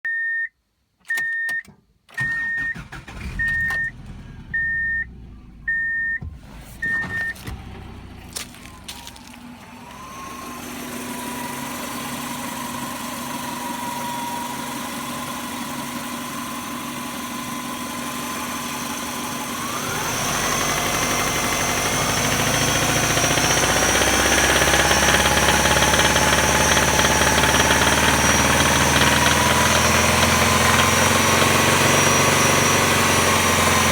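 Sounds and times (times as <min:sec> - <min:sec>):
car warning chime beeping: 0:00.0 - 0:08.2
car engine starting and idling: 0:01.0 - 0:33.9
engine revving: 0:02.2 - 0:33.9.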